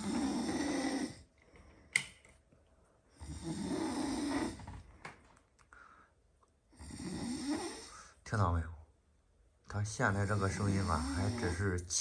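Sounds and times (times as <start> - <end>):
man snoring: 0.0 - 1.3, 3.2 - 4.7, 6.7 - 8.1, 10.0 - 12.0.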